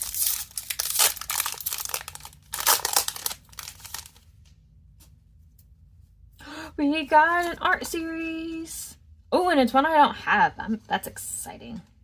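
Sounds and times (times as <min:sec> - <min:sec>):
plastic wrapper crinkling and tearing: 0:00.0 - 0:04.4.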